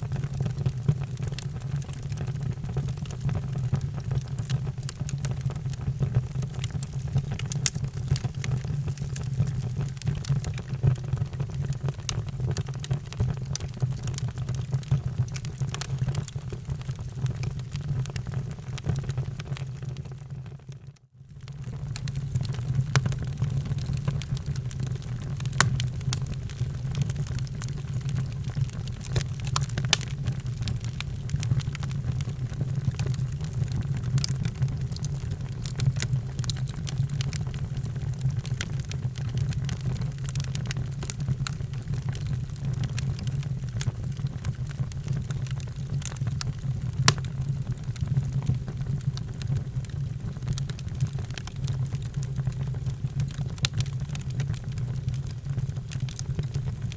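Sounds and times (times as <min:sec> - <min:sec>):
wood fire crackling and popping: 0:00.1 - 0:20.5, 0:21.4 - 0:56.9.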